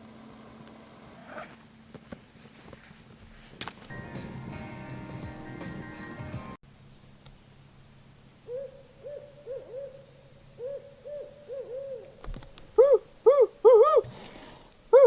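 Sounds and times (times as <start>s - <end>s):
owl hooting: 8.4s - 15.0s.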